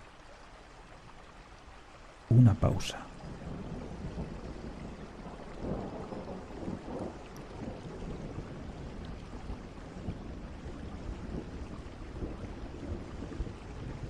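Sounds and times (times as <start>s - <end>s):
steady rain: 0.0s - 14.0s
low rumble of thunder: 3.2s - 14.0s.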